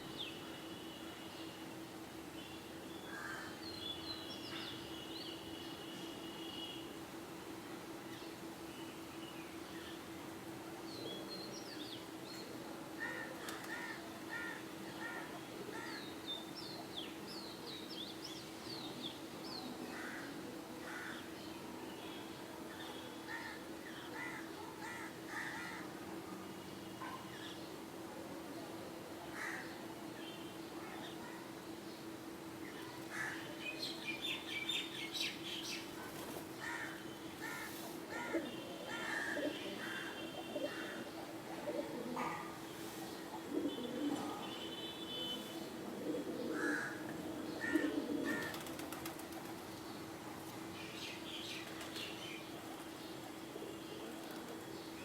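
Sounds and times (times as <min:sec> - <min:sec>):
birds calling: 0:33.1 - 0:42.5, 0:46.0 - 0:55.0
birds chirping: 0:46.1 - 0:55.0.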